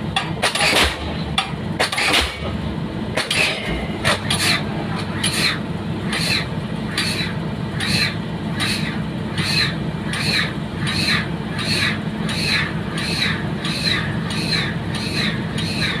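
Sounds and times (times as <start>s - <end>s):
piling rig engine drone: 0.0s - 16.0s
pile-driving hammer blows: 0.1s - 5.6s.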